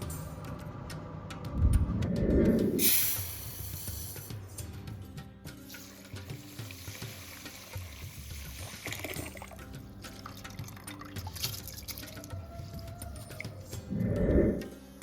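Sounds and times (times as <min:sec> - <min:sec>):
soft background music: 0:00.0 - 0:15.0
water trickling and splashing: 0:05.7 - 0:12.8.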